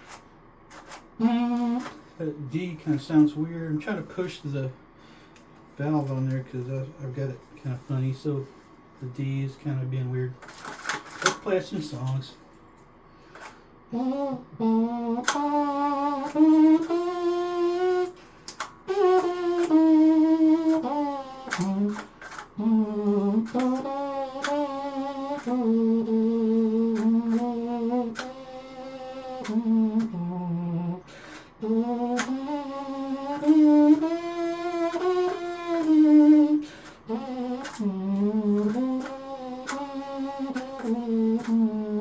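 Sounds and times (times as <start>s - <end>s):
plastic trumpet playing slow melody: 0.0s - 4.6s, 13.9s - 42.0s.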